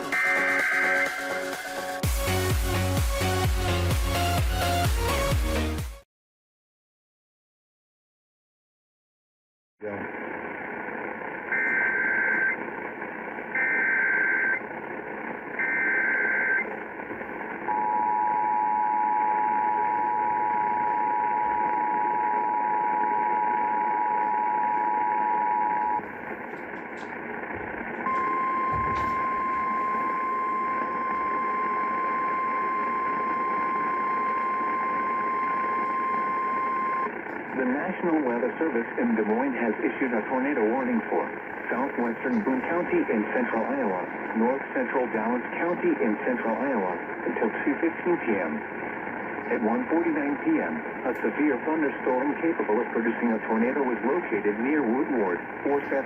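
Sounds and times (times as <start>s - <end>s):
steady warning alarm tone: 0.0s - 2.5s, 11.2s - 37.3s
radio hiss: 9.8s - 13.5s, 25.9s - 56.0s
two-tone attention signal: 11.5s - 12.6s, 28.0s - 37.1s.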